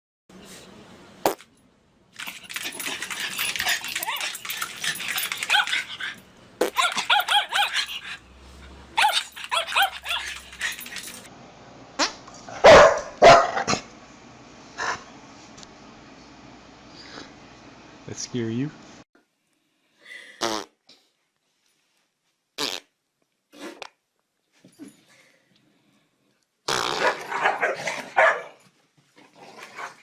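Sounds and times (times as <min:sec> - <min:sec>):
dog barking and yipping: 0:02.2 - 0:08.3, 0:09.0 - 0:11.3, 0:12.6 - 0:13.6, 0:27.0 - 0:28.6.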